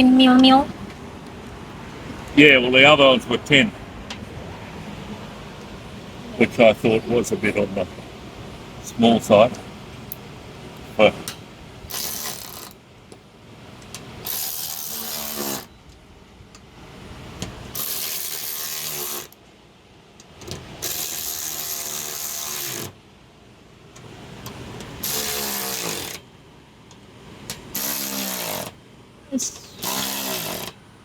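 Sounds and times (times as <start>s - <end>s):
power drill driving bolts: 11.9s - 12.8s, 13.8s - 15.7s, 17.7s - 19.4s, 20.4s - 23.0s, 24.8s - 26.2s, 27.5s - 28.8s, 29.6s - 30.8s.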